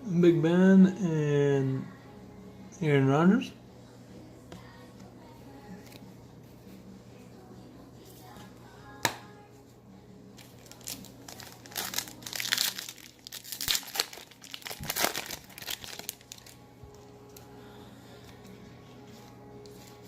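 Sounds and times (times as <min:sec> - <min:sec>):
foil wrapper tearing and crinkling: 0:10.4 - 0:16.6.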